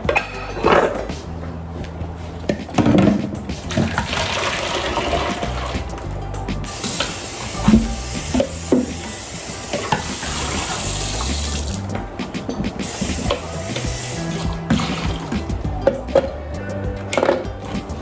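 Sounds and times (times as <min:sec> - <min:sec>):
tap water running into sink: 0:06.7 - 0:11.8.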